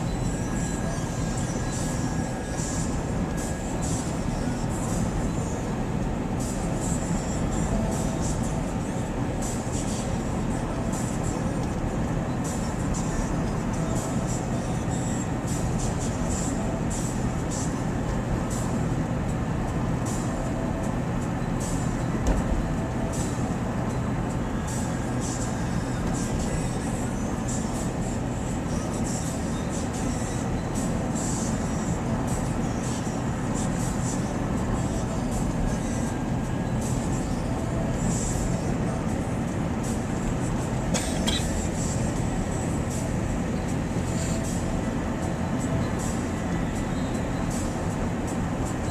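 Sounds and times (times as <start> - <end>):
vehicle running hum: 0.0 - 48.9
thump: 22.2 - 22.6.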